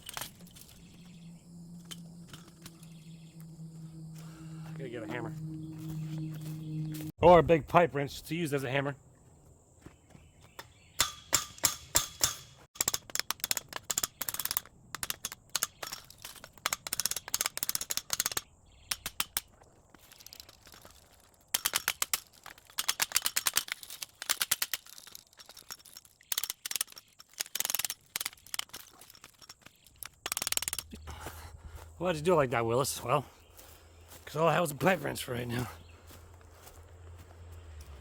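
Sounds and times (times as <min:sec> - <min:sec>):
wrench striking metal: 0:11.0 - 0:13.1.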